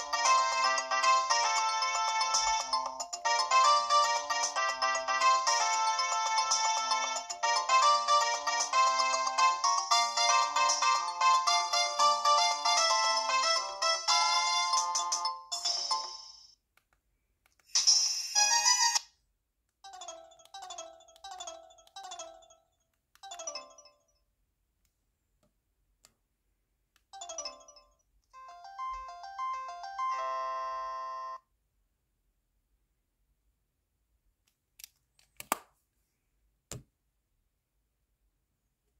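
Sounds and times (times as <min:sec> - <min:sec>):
phone ringtone chimes: 0:00.0 - 0:16.5, 0:19.8 - 0:22.6, 0:23.2 - 0:24.1, 0:27.2 - 0:31.4.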